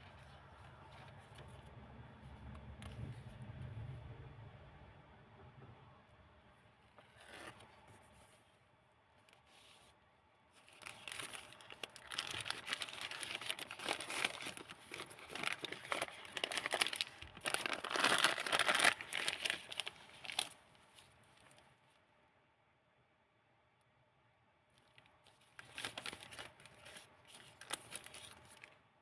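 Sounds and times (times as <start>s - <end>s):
paper pages turning and rustling: 7.0s - 8.4s, 9.3s - 21.7s, 24.8s - 28.8s.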